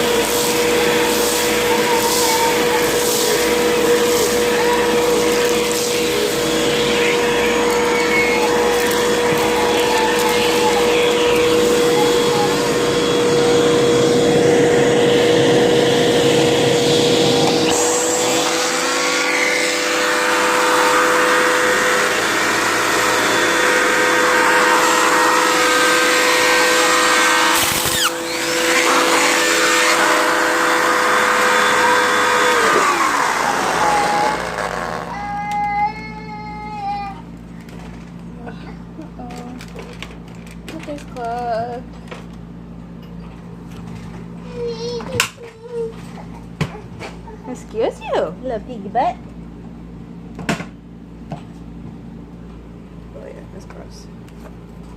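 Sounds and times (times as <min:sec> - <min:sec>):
vacuum cleaner motor whine: 0:00.0 - 0:42.4.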